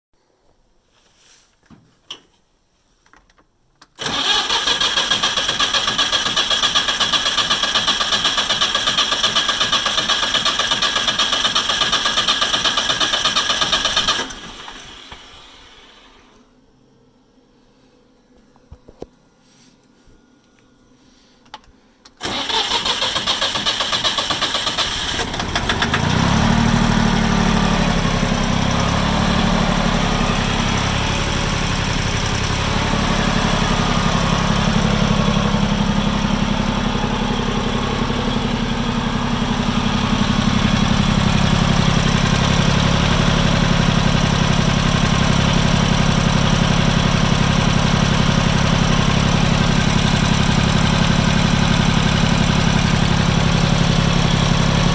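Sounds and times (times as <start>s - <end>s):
starter cranking engine: 4.0s - 14.9s, 22.2s - 28.7s
diesel tractor engine idling: 22.2s - 54.9s.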